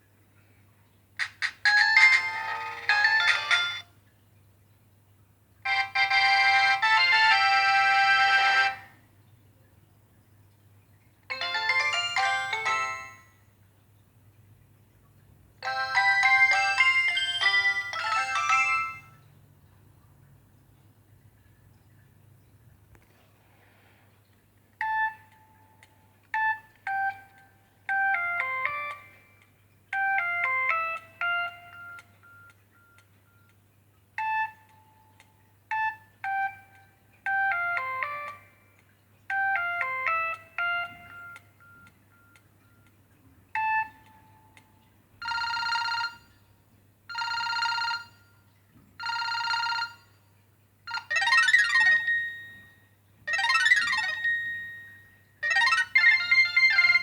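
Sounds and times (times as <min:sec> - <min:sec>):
buzzing phone rings: 0:01.2 - 0:03.9, 0:05.7 - 0:08.9, 0:11.3 - 0:13.4, 0:15.6 - 0:19.2, 0:30.0 - 0:33.5, 0:39.3 - 0:42.8, 0:45.2 - 0:46.4, 0:47.1 - 0:48.4, 0:49.0 - 0:50.2, 0:50.9 - 0:57.0
electronic ringtone melody: 0:01.2 - 0:03.9, 0:05.6 - 0:08.9, 0:11.3 - 0:13.4, 0:15.6 - 0:19.2, 0:24.8 - 0:25.8, 0:26.4 - 0:33.5, 0:34.2 - 0:38.6, 0:39.3 - 0:42.9, 0:43.6 - 0:46.5, 0:47.1 - 0:50.2, 0:50.9 - 0:57.0
ringtone with sweeping notes: 0:01.2 - 0:03.9, 0:05.7 - 0:08.9, 0:11.3 - 0:13.4, 0:15.6 - 0:19.2, 0:24.8 - 0:25.8, 0:26.4 - 0:33.5, 0:34.2 - 0:38.6, 0:39.3 - 0:42.9, 0:43.6 - 0:46.4, 0:50.9 - 0:57.0.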